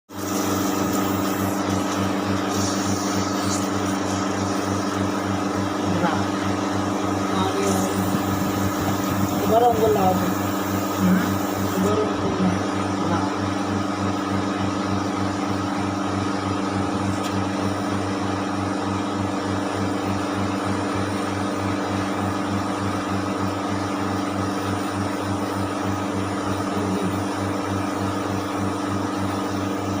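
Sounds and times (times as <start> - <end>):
refrigeration compressor humming: 0.1 - 30.0.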